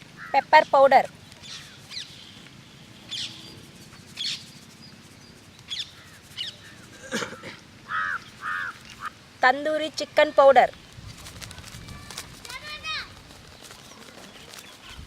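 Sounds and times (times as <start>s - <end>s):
low harsh bird calls: 0.0s - 9.2s
birds chirping: 0.0s - 15.0s.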